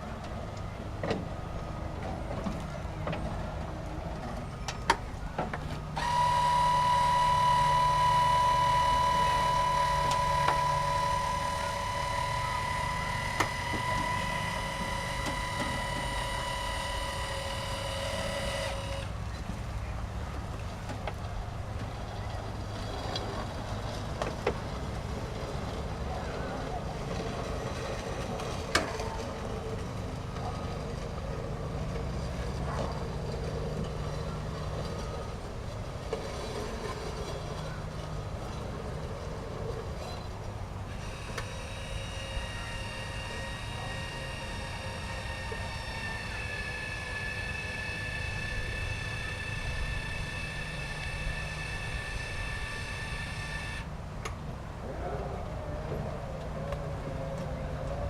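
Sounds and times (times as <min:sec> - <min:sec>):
high steady whine: 0:05.1 - 0:19.2, 0:29.4 - 0:58.0
electric motor low rumble: 0:05.1 - 0:20.8, 0:21.6 - 0:58.0.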